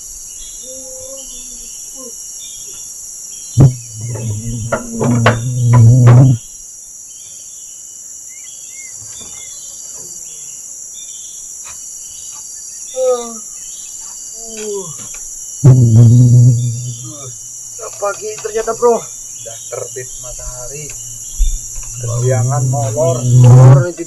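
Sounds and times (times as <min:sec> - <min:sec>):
crickets and insects chirping: 0:00.0 - 0:24.0
falling calls: 0:18.0 - 0:24.0
low rough drone: 0:22.0 - 0:24.0.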